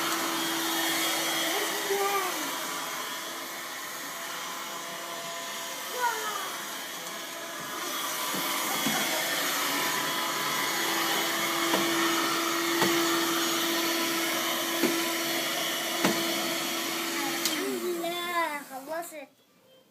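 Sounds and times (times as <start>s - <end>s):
vacuum cleaner running: 0.0s - 18.9s
vacuum cleaner knocks: 7.5s - 9.3s, 11.2s - 13.5s, 14.6s - 16.6s.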